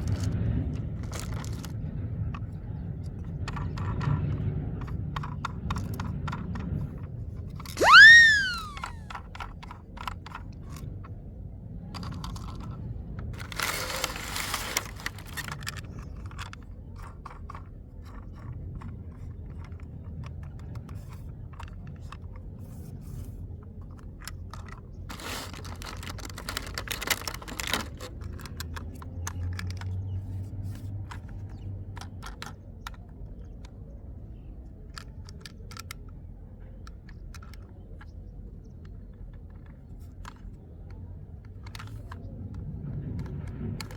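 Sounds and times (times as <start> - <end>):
plastic parts clicking and scraping: 0.0 - 43.9
packaging crinkling: 13.4 - 15.7, 25.1 - 28.2.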